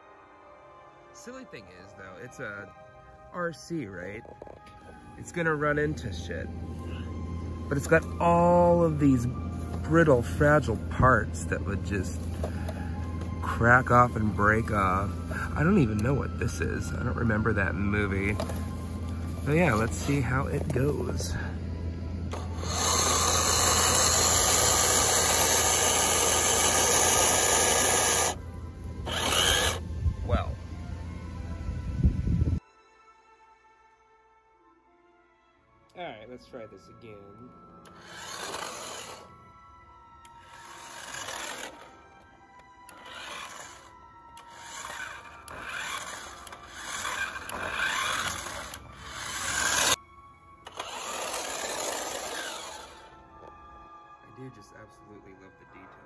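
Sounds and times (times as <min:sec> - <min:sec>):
toy car motor whirring: 0:22.3 - 0:28.4, 0:29.0 - 0:29.8, 0:37.8 - 0:39.3, 0:40.2 - 0:42.0, 0:42.9 - 0:50.0, 0:50.6 - 0:53.1.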